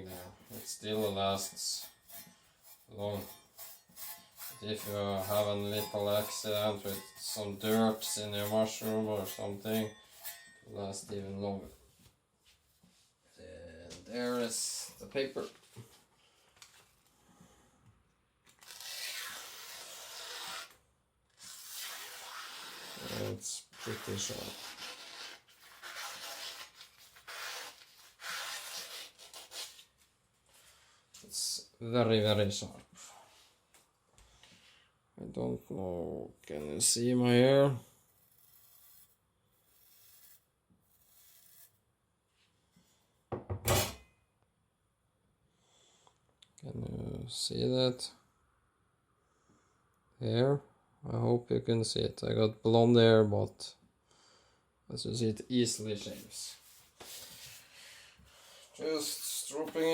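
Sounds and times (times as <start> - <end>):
blade scraping hair: 0.0 - 11.0, 18.6 - 20.8, 21.4 - 29.8, 38.2 - 41.8
cleaver slicing through paper: 18.6 - 20.8, 21.4 - 29.9.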